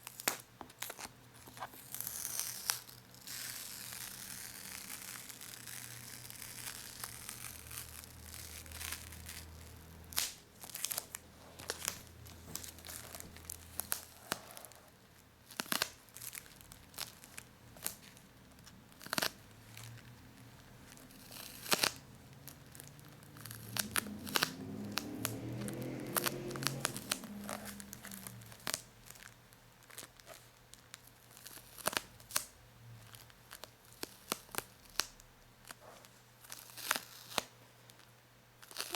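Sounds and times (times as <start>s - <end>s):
sticky paper and plastic peeling: 0.0s - 38.9s.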